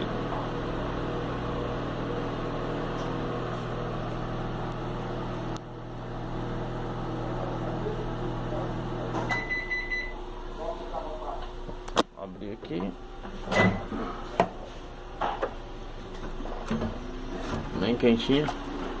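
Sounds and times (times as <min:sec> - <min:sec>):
microwave oven humming: 0:00.0 - 0:19.0
microwave beep: 0:09.2 - 0:10.3, 0:13.5 - 0:13.9.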